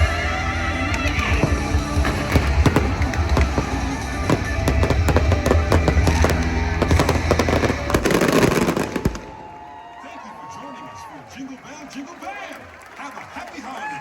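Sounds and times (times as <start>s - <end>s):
loud show music with heavy bass: 0.0s - 8.9s
fireworks bangs and crackles: 0.0s - 9.8s.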